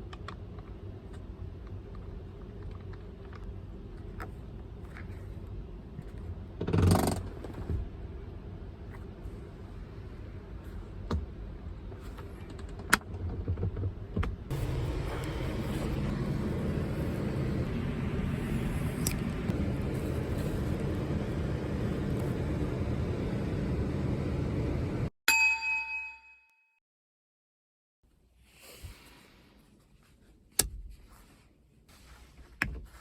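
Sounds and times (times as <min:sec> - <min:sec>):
van engine rumble: 0:00.8 - 0:25.1
road noise: 0:14.5 - 0:25.1.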